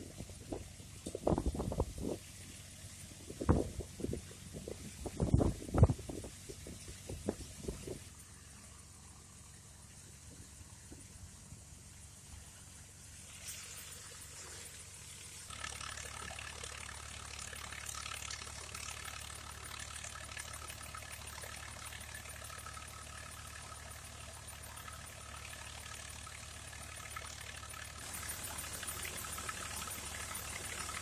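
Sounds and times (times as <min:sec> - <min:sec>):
farm machinery engine hum: 0:00.0 - 0:31.0.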